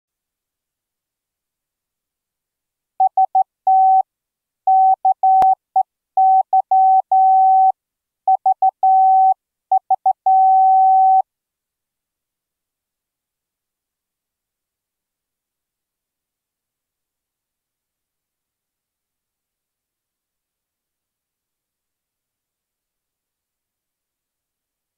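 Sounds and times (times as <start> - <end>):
morse code beeps: 8.4 - 11.2.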